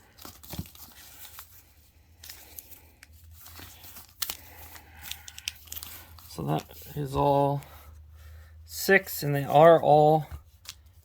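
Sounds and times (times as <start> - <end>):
wrapping crinkling and rustling: 0.0 - 8.0.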